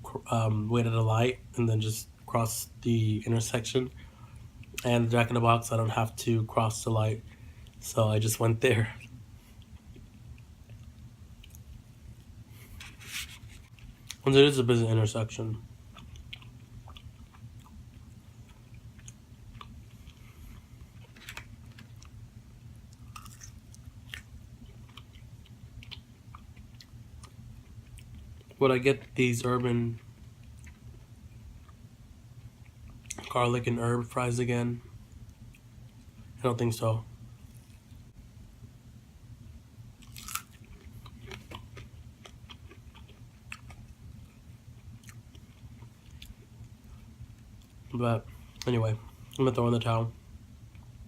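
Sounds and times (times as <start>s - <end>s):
steady low hum: 0.0s - 51.0s
person chewing food: 9.0s - 14.2s, 15.8s - 22.2s, 22.9s - 28.6s, 30.0s - 31.8s, 40.0s - 49.4s
crisp crunching bite: 23.0s - 25.2s, 40.0s - 43.8s.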